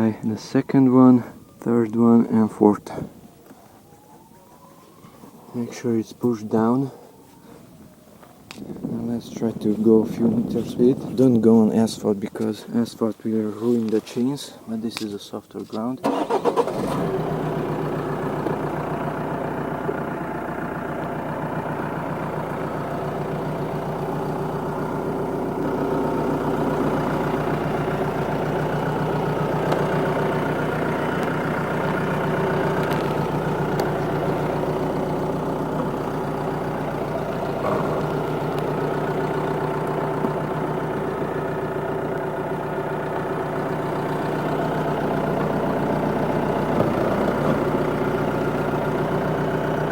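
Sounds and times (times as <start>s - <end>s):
car engine running: 7.7s - 12.1s, 16.1s - 49.9s.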